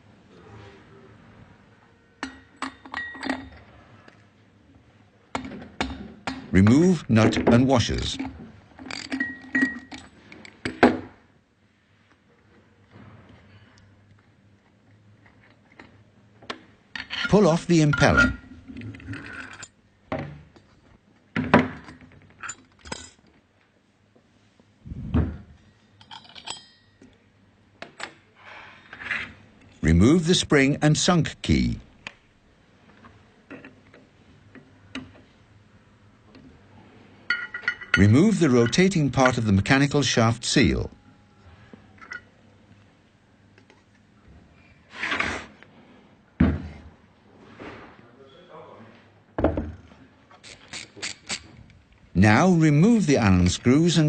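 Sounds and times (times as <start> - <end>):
metal pump parts clinking: 7.2 - 10.8, 17.0 - 19.8, 26.0 - 27.1.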